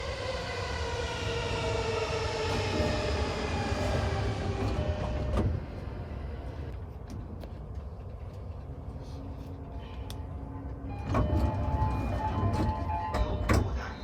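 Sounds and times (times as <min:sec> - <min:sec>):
train traction motors whining: 0:00.0 - 0:06.8, 0:07.4 - 0:14.0
train running rumble: 0:00.0 - 0:14.0
clunk: 0:10.9 - 0:14.0.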